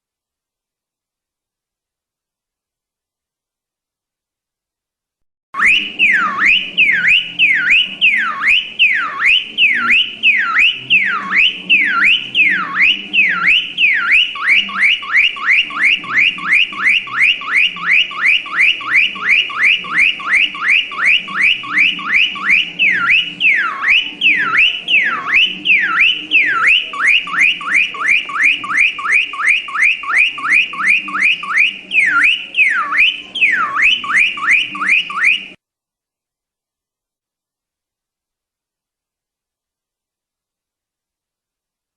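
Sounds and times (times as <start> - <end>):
car alarm siren: 5.6 - 35.6.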